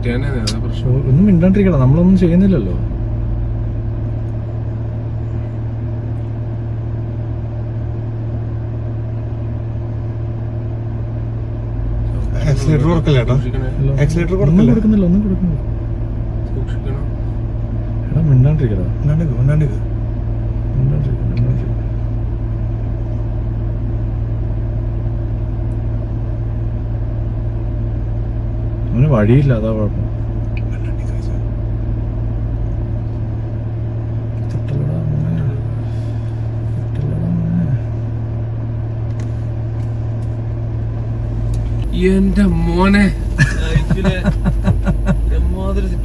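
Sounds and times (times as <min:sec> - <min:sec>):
vehicle engine idling: 0:00.0 - 0:46.0.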